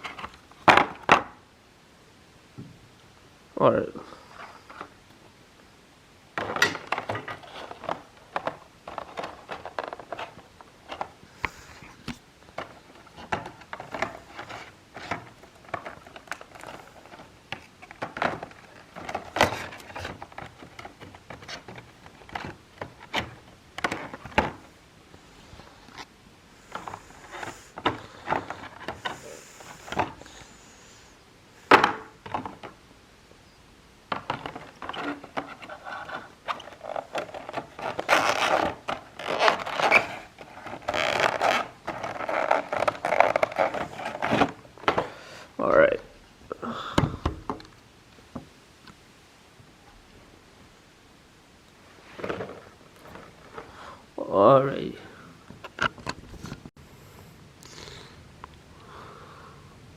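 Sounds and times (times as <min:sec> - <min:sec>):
handling a model and box packaging: 0:06.3 - 0:30.5, 0:33.4 - 0:45.2, 0:51.9 - 0:53.8.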